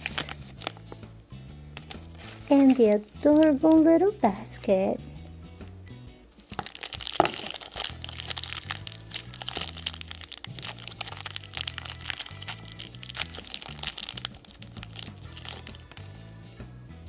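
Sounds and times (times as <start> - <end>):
plastic packaging crinkling: 0.0 - 0.8, 1.8 - 3.1, 6.4 - 16.3
background music with low beat: 0.0 - 17.0.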